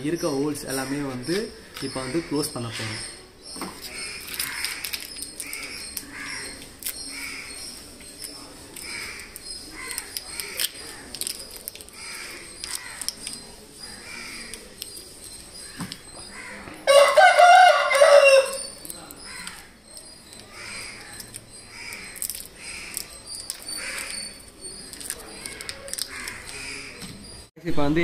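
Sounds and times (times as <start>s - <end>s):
crows cawing: 3.9s - 7.6s, 8.8s - 13.2s, 13.8s - 14.6s, 15.6s - 19.8s, 20.5s - 23.1s, 23.7s - 24.3s, 25.3s - 27.0s.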